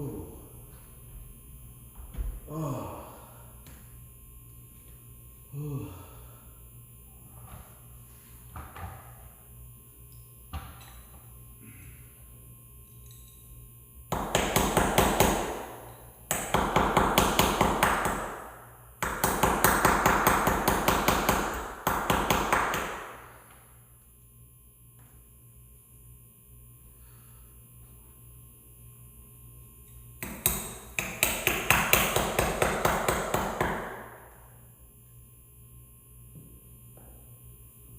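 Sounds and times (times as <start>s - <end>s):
hammer striking chisel into wood: 14.1s - 15.7s, 16.3s - 18.4s, 19.0s - 23.1s, 30.2s - 34.1s.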